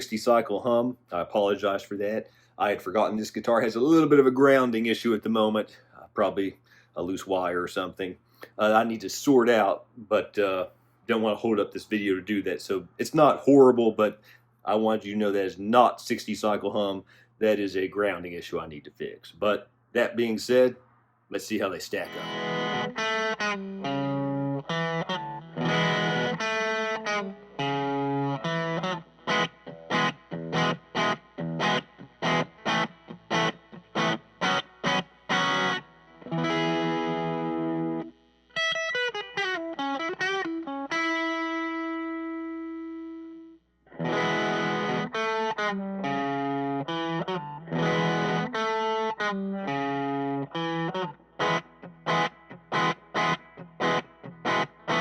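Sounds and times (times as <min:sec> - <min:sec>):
overdriven electric guitar riff: 0:22.0 - 0:55.0.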